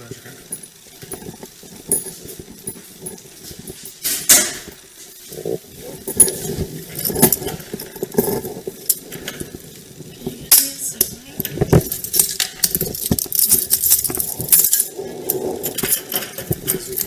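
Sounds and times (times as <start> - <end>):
light metallic clinks: 0.3 - 4.9
handling rustling: 0.4 - 17.0.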